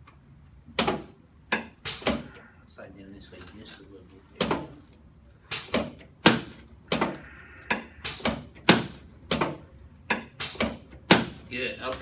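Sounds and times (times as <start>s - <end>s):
sharp knocks of chiropractic adjustment: 0.7s - 2.4s, 5.5s - 11.5s.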